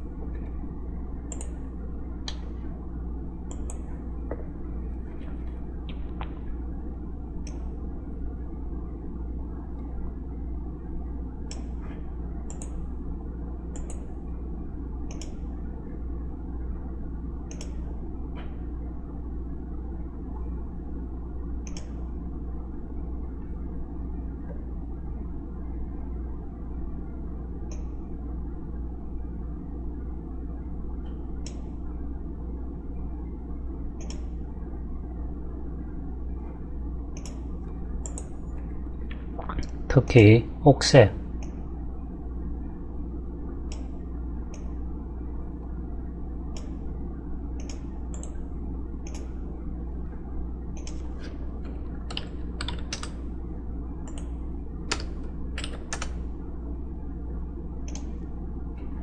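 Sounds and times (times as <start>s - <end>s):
low electrical hum: 0.0s - 59.0s
computer mouse clicks: 1.3s - 1.6s, 3.4s - 3.9s, 12.5s - 12.8s, 13.7s - 14.1s, 15.1s - 15.4s, 17.5s - 17.8s, 21.6s - 22.0s, 31.1s - 31.7s, 34.0s - 34.4s, 37.2s - 38.4s, 47.6s - 48.4s, 49.0s - 49.4s, 50.8s - 53.2s, 54.0s - 56.2s, 57.8s - 58.2s.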